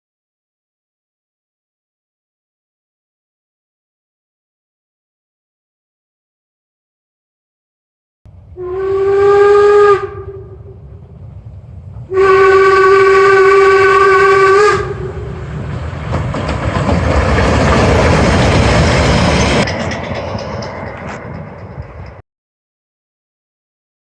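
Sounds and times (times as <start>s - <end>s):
rushing noise of train: 8.3s - 22.2s
steam locomotive whistle: 8.6s - 11.1s, 12.1s - 15.5s.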